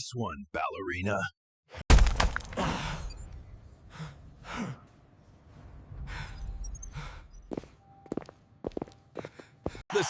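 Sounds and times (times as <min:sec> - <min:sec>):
heavy breathing: 0:06.0 - 0:07.8.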